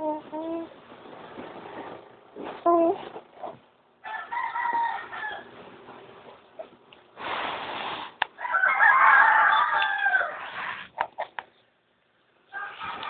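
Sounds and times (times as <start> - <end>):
rooster crowing: 4.0 - 5.5, 8.4 - 10.6, 12.5 - 13.0.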